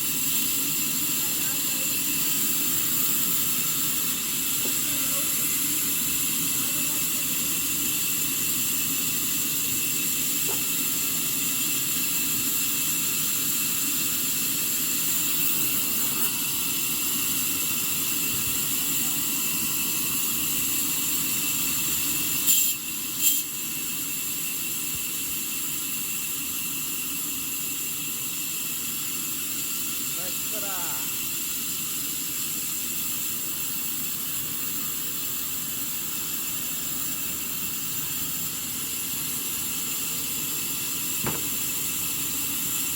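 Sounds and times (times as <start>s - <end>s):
sawmill machinery hissing: 0.0s - 42.9s
sharp knocks: 41.2s - 41.5s.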